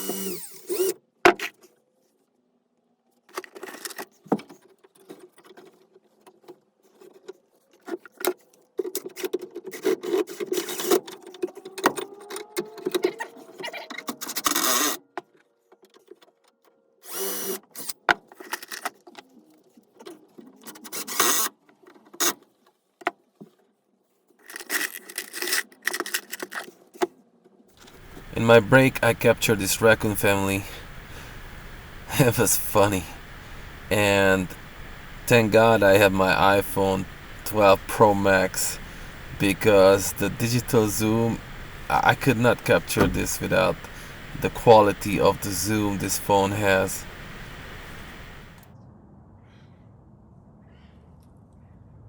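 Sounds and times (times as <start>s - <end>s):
power drill on wood: 0.0s - 0.9s.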